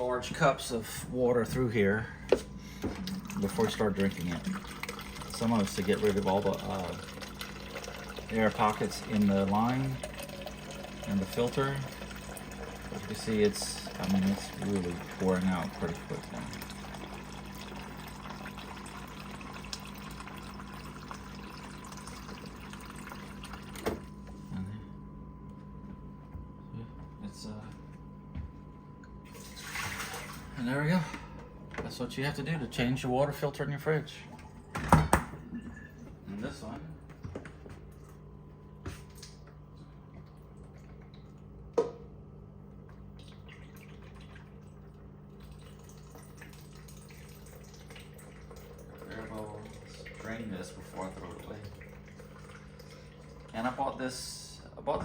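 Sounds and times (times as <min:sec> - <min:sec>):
water stream into a cup: 0:02.8 - 0:24.1, 0:43.0 - 0:54.2.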